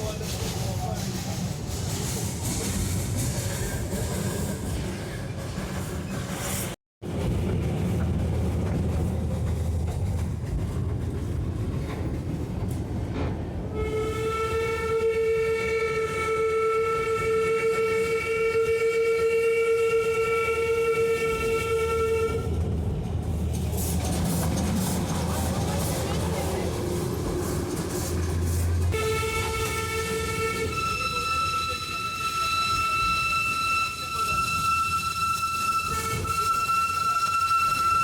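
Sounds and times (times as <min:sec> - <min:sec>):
train wheels rumbling: 0:00.0 - 0:38.0
steam locomotive whistle: 0:13.7 - 0:22.6, 0:29.0 - 0:38.0.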